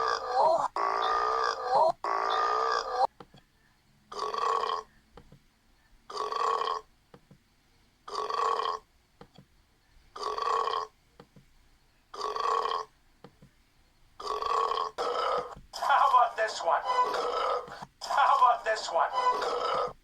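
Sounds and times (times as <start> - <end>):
short burp: 14.3 - 15.6.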